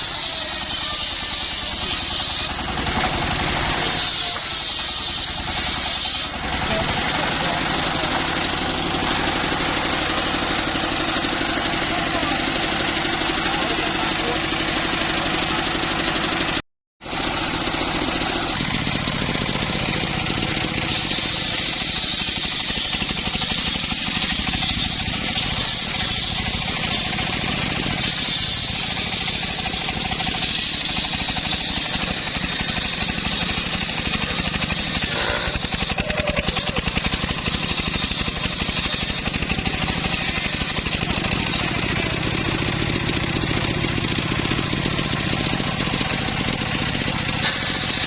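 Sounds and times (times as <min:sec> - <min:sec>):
saw engine running: 0:00.0 - 0:48.0
rapid rattling: 0:17.8 - 0:48.0.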